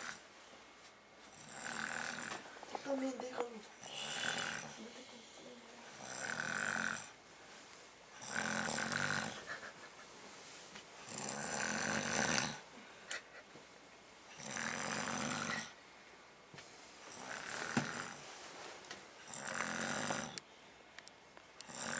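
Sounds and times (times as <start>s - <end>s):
person snoring: 1.3s - 2.4s, 3.8s - 5.0s, 5.9s - 7.1s, 8.2s - 9.5s, 11.0s - 12.6s, 14.4s - 15.8s, 17.1s - 18.2s, 19.2s - 20.4s, 21.7s - 21.9s.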